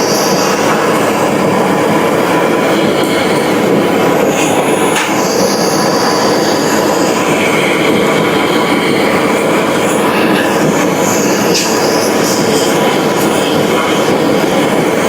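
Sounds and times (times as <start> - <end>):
high squealing tones: 4.3 - 7.8.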